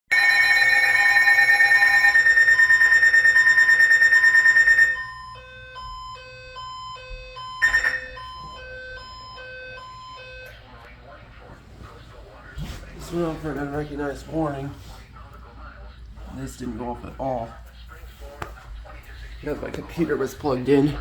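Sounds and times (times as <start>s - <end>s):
pulsing high-pitched electronic alarm: 0.1s - 10.6s.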